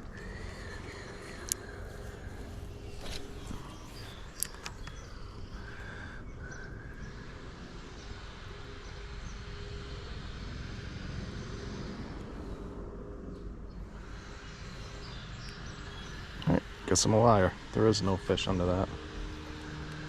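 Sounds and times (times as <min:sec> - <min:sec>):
low rumble: 0:00.0 - 0:16.9
sharp clicks: 0:01.1 - 0:01.8, 0:04.3 - 0:05.2.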